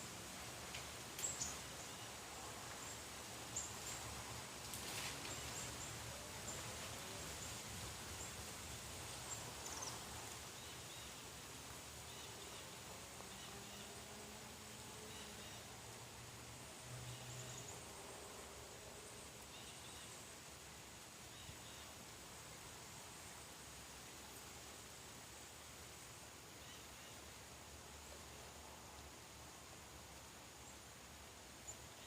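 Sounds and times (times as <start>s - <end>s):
light rain pattering: 0.0s - 32.0s.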